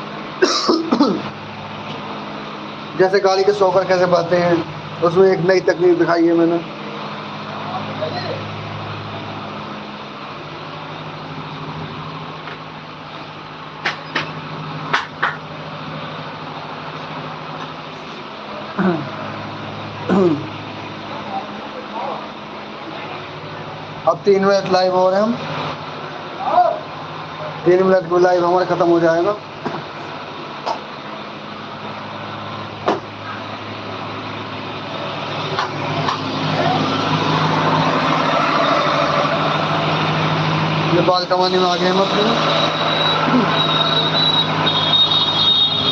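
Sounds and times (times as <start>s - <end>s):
vehicle engine running: 0.0s - 45.9s
sharp knocks: 13.8s - 15.4s.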